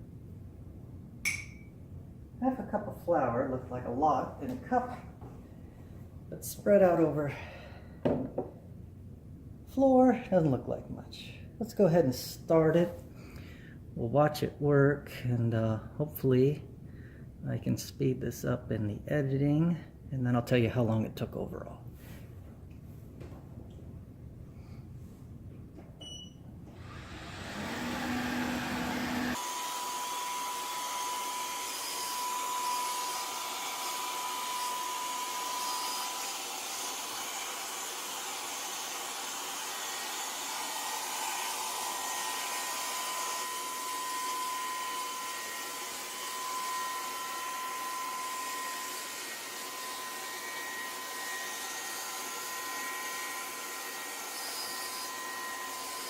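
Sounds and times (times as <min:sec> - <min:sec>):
robot vacuum motor whine: 0:26.8 - 0:56.0.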